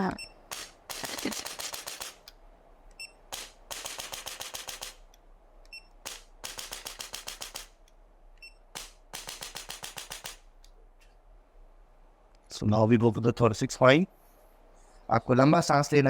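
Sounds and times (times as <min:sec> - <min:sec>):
rapid clicking impulses: 0:00.0 - 0:08.0, 0:08.6 - 0:10.8.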